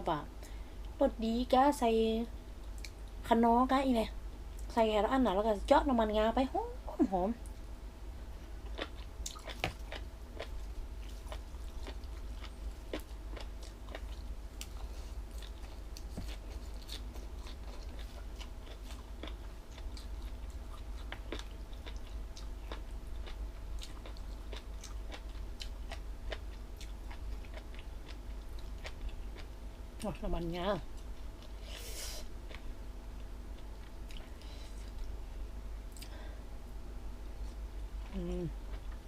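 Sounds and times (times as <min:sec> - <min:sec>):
person chewing crunchy food: 0:08.6 - 0:29.6, 0:30.9 - 0:35.1.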